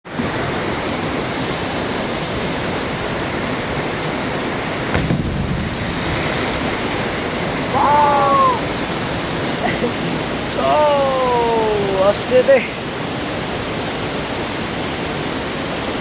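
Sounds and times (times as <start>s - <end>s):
river water rushing: 0.1s - 16.0s
low bump: 4.9s - 7.0s.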